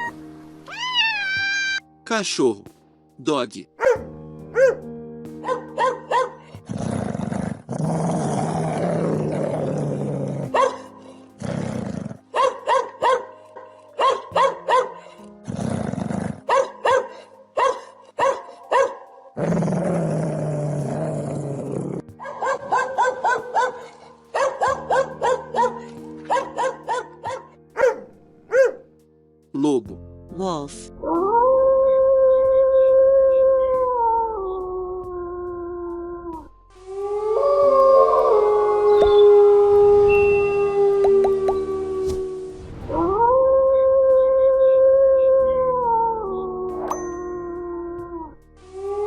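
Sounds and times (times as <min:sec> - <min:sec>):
background music: 0:00.0 - 0:49.0
dog barking: 0:03.8 - 0:04.8, 0:05.4 - 0:06.6, 0:10.5 - 0:11.1, 0:12.3 - 0:15.2, 0:16.4 - 0:19.1, 0:22.2 - 0:28.9
dog growling: 0:06.6 - 0:12.3, 0:15.2 - 0:17.3, 0:19.4 - 0:24.1.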